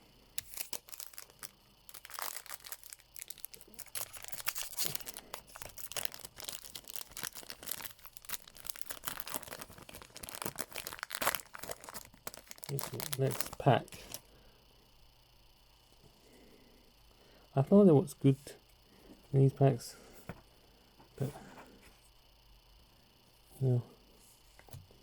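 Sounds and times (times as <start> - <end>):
foil wrapper crinkling and tearing: 0.4 - 14.2.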